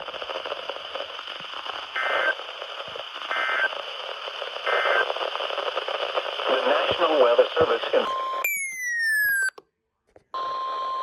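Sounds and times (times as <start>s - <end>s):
radio hiss and static: 0.0s - 8.1s.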